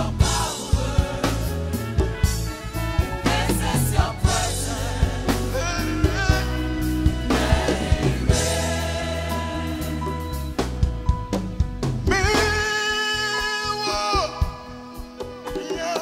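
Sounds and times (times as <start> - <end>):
voices singing: 0.0 - 1.9, 3.2 - 10.5
gospel band playing: 0.0 - 16.0.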